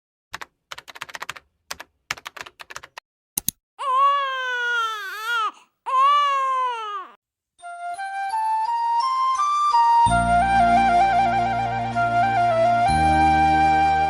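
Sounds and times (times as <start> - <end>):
keyboard typing: 0.3 - 3.6
infant crying: 3.8 - 7.2.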